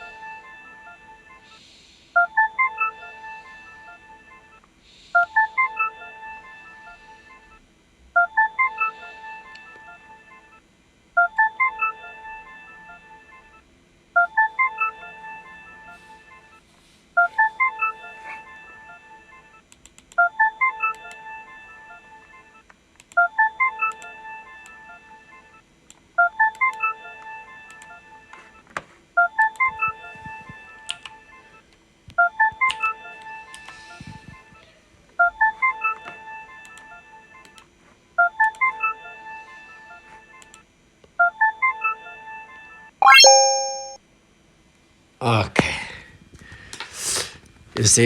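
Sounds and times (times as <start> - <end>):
electronic beeping jingle: 43.0 - 44.0.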